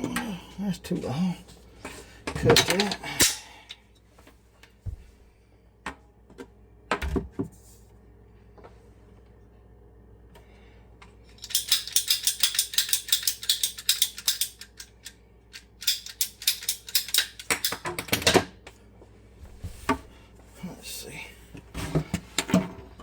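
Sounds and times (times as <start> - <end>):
ratcheting pipe cutter clicking: 11.4 - 17.8.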